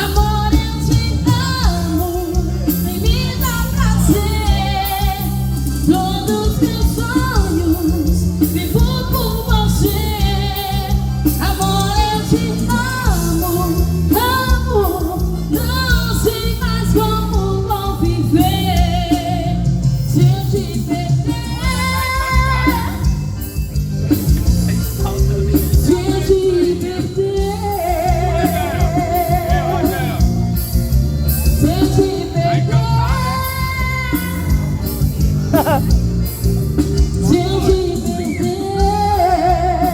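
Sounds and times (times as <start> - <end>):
band with bass and drums: 0.0 - 39.9
person singing with vibrato: 25.1 - 30.5, 31.6 - 35.9, 37.1 - 39.9.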